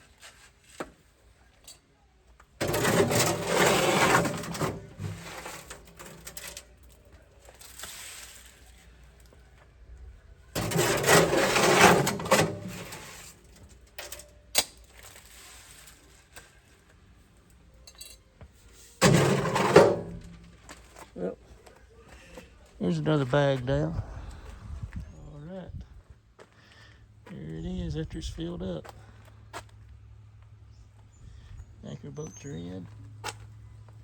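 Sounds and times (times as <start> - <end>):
wet concrete scraping and sloshing: 2.6 - 8.8, 10.6 - 13.6, 19.0 - 20.7.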